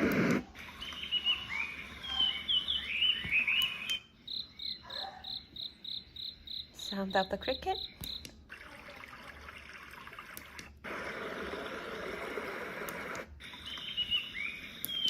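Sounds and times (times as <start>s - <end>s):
high chirping: 0.6s - 8.3s, 13.4s - 15.0s
stream sound from speaker: 6.8s - 14.4s
trickling water from speaker: 8.0s - 13.0s.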